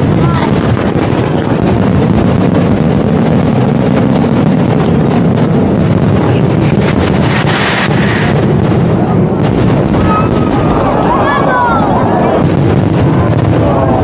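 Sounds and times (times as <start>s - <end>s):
fireworks bangs and crackles: 0.0s - 14.0s.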